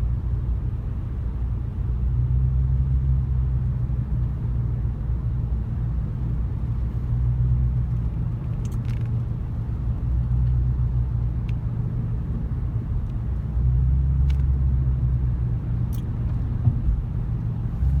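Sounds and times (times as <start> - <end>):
engine droning: 6.1 - 18.0.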